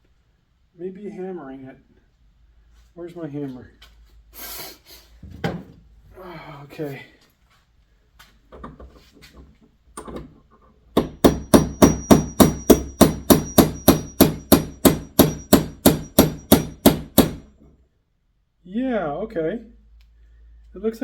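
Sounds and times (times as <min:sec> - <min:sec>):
hammer striking steel pin: 0:11.0 - 0:17.5.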